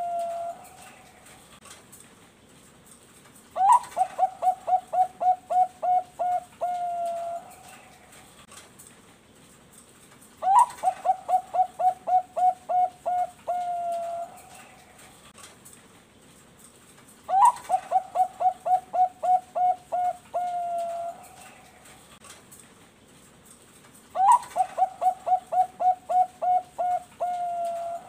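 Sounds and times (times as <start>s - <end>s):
dove cooing: 0.0s - 1.3s, 3.6s - 8.2s, 10.4s - 15.1s, 17.3s - 22.1s, 24.2s - 28.0s.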